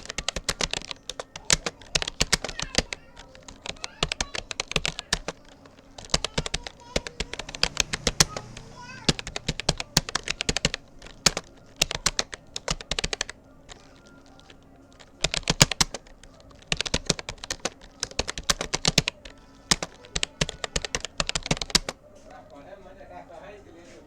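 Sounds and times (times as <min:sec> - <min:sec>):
keyboard keys clicking: 0:00.0 - 0:22.6.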